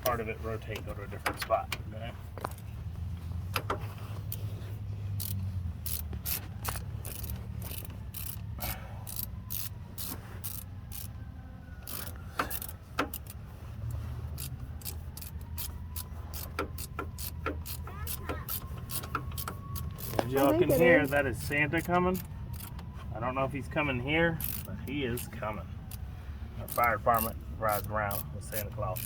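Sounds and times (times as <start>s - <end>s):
hand ratchet clicking: 3.5s - 11.2s, 11.8s - 22.8s, 24.4s - 29.0s
distant siren: 6.3s - 29.0s.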